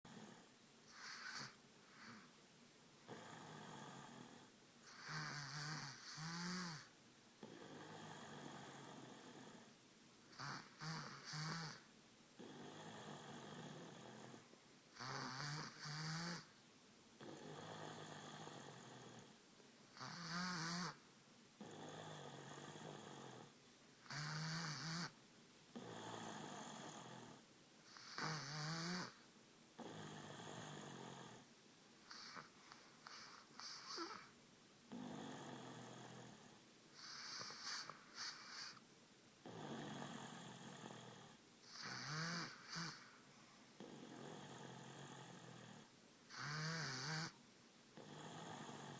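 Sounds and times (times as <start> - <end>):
loud rasping snoring: 0.1 - 2.2, 3.1 - 9.7, 10.3 - 11.8, 12.4 - 14.4, 15.0 - 16.5, 17.2 - 19.4, 20.0 - 21.0, 21.6 - 23.5, 24.1 - 25.2, 25.8 - 29.2, 29.8 - 31.4, 32.1 - 32.5, 33.1 - 34.3, 34.9 - 38.8, 39.4 - 43.1, 43.8 - 47.4, 48.0 - 48.9
quiet breathing: 0.1 - 15.8, 25.0 - 46.7.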